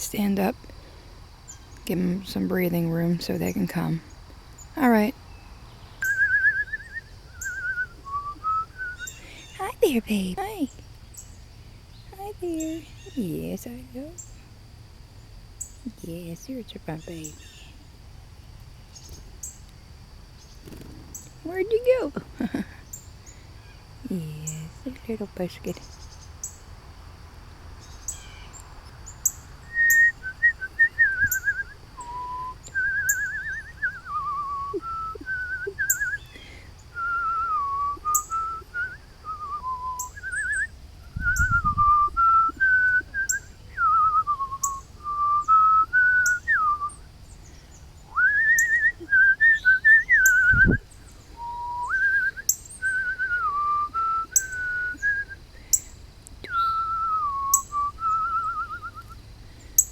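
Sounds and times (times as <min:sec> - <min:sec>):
person whistling a tune: 0:06.0 - 0:09.2, 0:29.8 - 0:36.2, 0:37.0 - 0:40.6, 0:41.2 - 0:46.9, 0:48.2 - 0:50.8, 0:51.4 - 0:55.4, 0:56.5 - 0:59.1.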